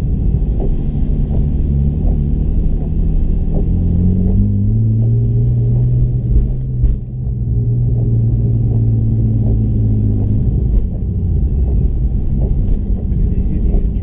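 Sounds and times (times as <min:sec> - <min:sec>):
car engine running steadily: 0:00.0 - 0:14.0
short engine knocks: 0:00.4 - 0:14.0.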